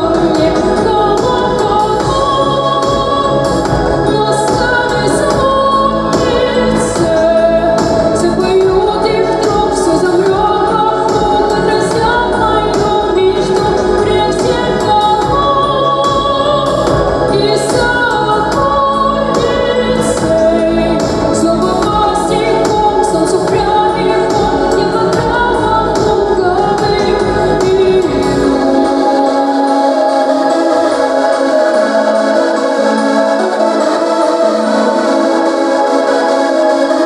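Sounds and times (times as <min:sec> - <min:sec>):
instrumental backing: 0:00.0 - 0:37.0
choir-like singing: 0:28.3 - 0:37.0.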